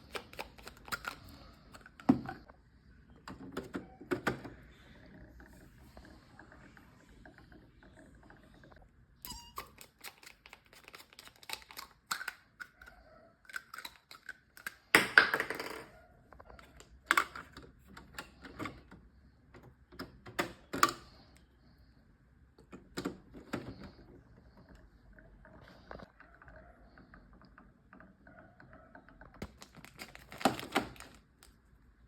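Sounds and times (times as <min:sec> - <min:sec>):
packaging being handled: 0:00.0 - 0:02.0, 0:09.7 - 0:12.3, 0:29.4 - 0:31.6.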